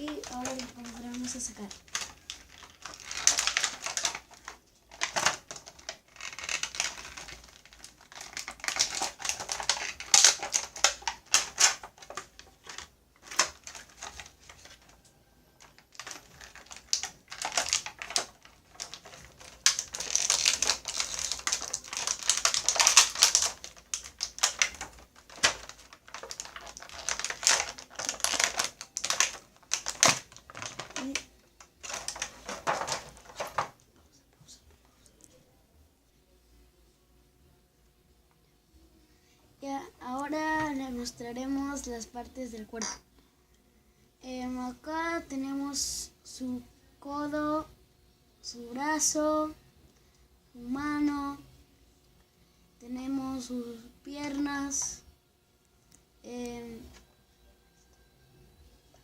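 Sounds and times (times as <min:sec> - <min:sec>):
toy packaging crinkling and clicking: 0:00.0 - 0:33.8.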